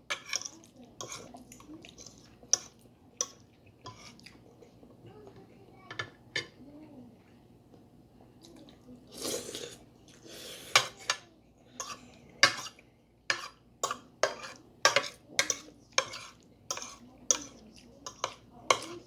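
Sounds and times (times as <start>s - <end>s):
cutlery clinking: 0.1s - 1.3s, 11.8s - 19.0s
cutlery scraping on a plate: 0.1s - 4.3s, 10.5s - 11.2s, 11.8s - 19.0s.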